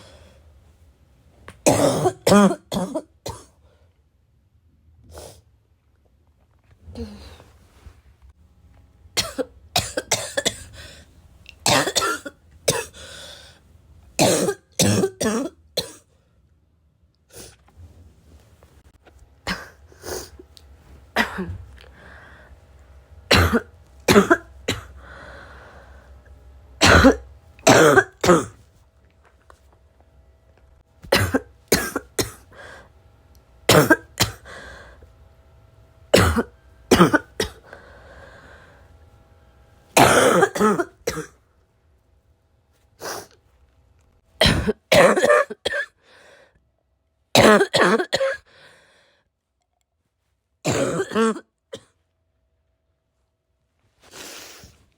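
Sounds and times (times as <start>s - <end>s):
person coughing harshly: 1.6s - 3.6s, 9.2s - 10.9s, 11.6s - 13.2s, 14.2s - 16.1s, 19.4s - 20.4s, 21.1s - 21.8s, 23.3s - 25.0s, 26.8s - 28.6s, 31.0s - 32.5s, 33.7s - 34.6s, 36.1s - 37.7s, 40.0s - 41.4s, 44.4s - 46.0s, 47.4s - 48.6s, 50.6s - 52.0s.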